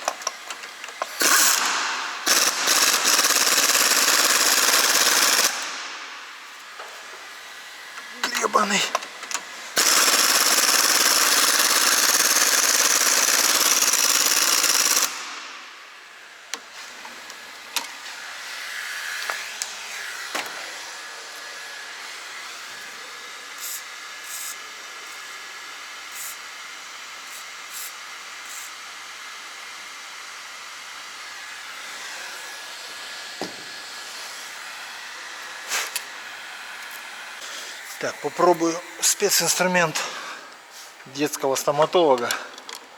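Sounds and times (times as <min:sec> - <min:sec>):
tools clicking and knocking: 0:00.0 - 0:03.2, 0:42.2 - 0:42.9
loud steady hiss: 0:31.4 - 0:42.2.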